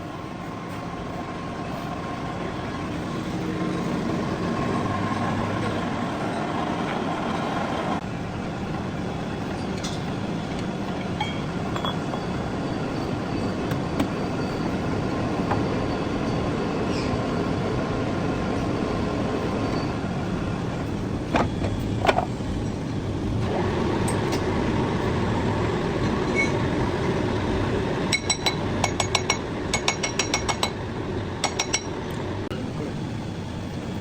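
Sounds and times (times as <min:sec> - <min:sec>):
metal lathe running: 0:02.3 - 0:33.0
ringing metallic clinks: 0:11.0 - 0:14.8.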